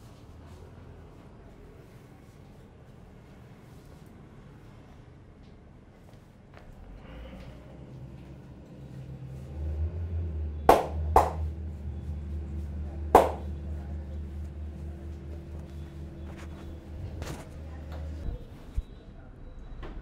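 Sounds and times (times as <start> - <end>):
hand slaps on skin: 10.7 - 11.4, 13.2 - 13.4.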